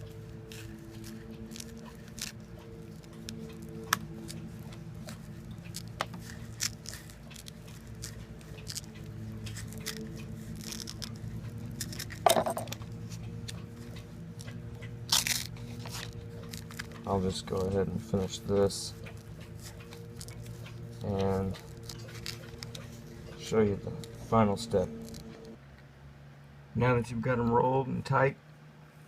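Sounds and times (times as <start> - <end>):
handling clicks and rustles: 0.0 - 25.6
velcro tape rasping: 0.0 - 25.6
steady low hum: 0.0 - 29.0.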